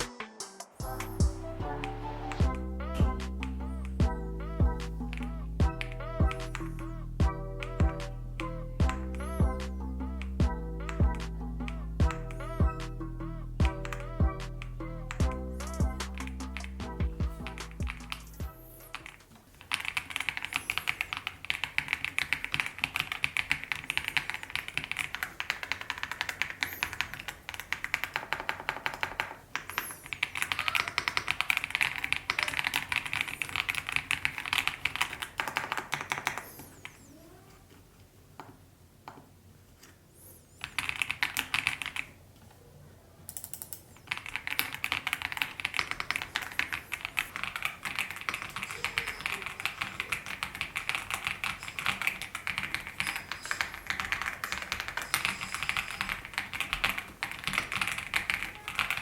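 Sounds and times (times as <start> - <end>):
mechanical keyboard typing: 13.8 - 37.0, 40.6 - 42.2, 43.3 - 59.0.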